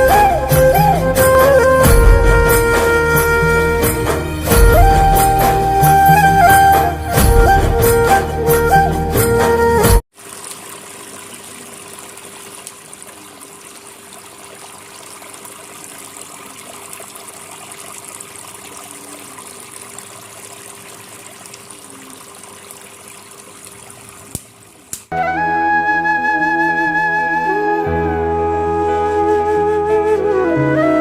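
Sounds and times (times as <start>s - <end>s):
fountain water trickling: 10.1s - 25.1s.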